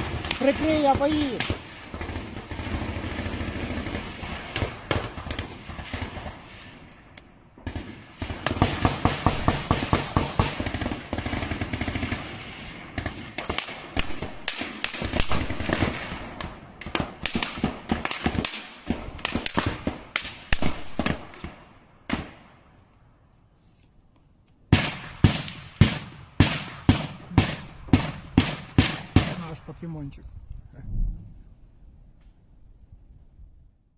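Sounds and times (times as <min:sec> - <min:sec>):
automatic gunfire bursts: 0:07.6 - 0:12.4
single gunshots: 0:24.7 - 0:29.6.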